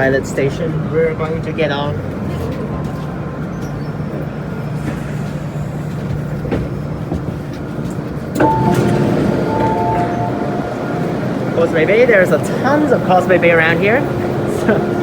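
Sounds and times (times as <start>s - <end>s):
train low hum: 0.0s - 15.0s
train clatter: 0.7s - 15.0s
two-tone sound: 8.4s - 11.6s.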